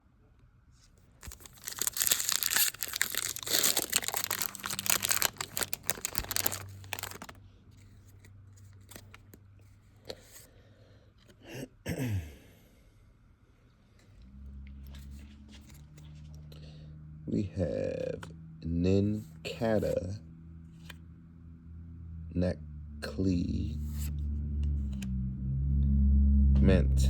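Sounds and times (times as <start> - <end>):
foil wrapper tearing and crinkling: 1.2 - 7.4.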